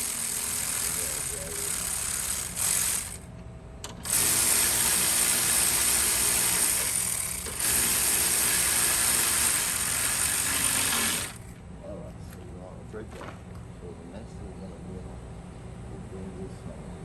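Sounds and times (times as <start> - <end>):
power tool driving bolt: 0.0 - 11.5.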